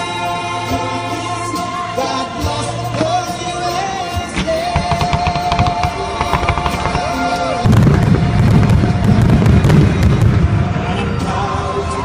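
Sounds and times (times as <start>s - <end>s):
pop song with singer: 0.0s - 12.0s
fireworks booming and crackling: 3.8s - 11.2s.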